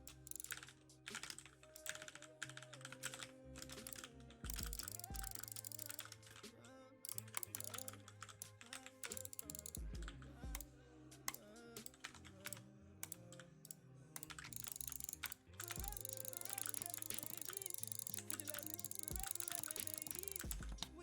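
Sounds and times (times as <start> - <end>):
mechanical keyboard key clicks: 0.0 - 6.1, 7.1 - 10.6, 14.2 - 20.7.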